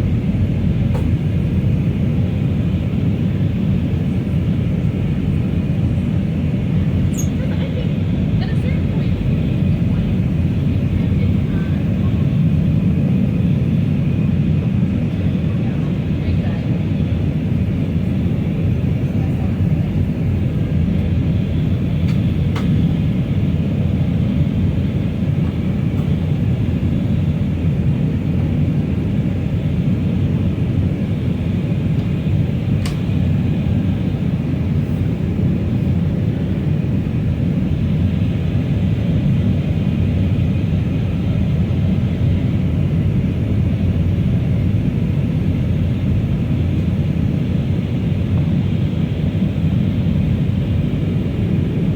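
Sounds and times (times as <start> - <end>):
aircraft cabin engine roar: 0.0 - 51.9
airflow over fuselage: 0.0 - 51.9.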